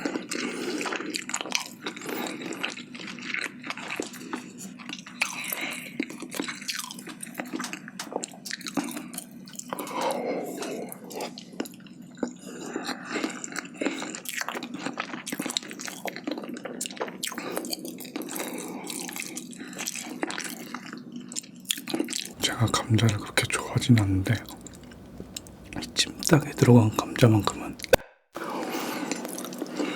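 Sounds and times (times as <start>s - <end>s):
person chewing with wet smacking: 22.4s - 28.0s, 28.8s - 29.9s.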